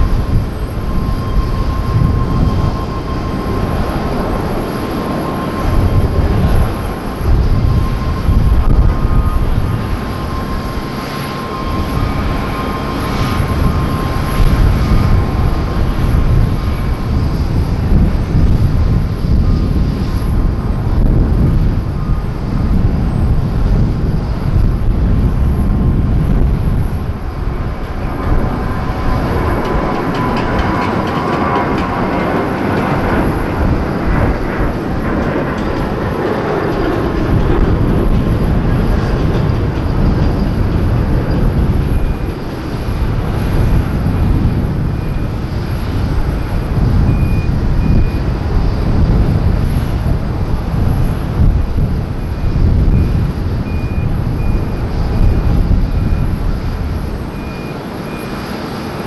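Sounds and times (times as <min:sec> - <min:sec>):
jet engine whine: 0:00.0 - 0:59.0
jet engines rumbling: 0:00.0 - 0:59.0.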